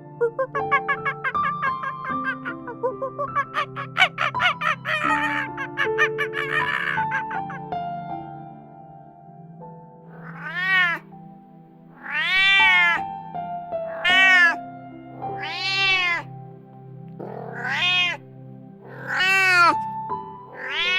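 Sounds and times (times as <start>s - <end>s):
background music: 0.0s - 20.9s
cat meowing: 3.2s - 7.5s, 10.1s - 11.0s, 12.0s - 13.0s, 13.9s - 14.6s, 15.3s - 16.3s, 17.2s - 18.2s, 18.8s - 19.9s, 20.5s - 20.9s.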